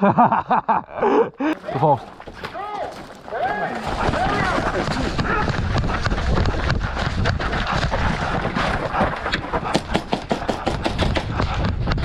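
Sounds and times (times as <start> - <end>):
wind on microphone: 4.2 - 9.8, 10.5 - 12.0.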